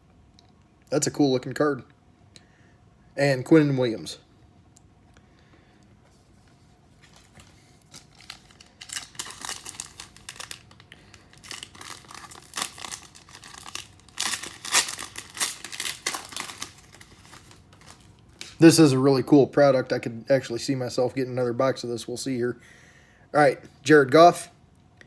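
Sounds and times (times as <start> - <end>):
plastic wrapper crinkling and tearing: 6.9 - 18.8.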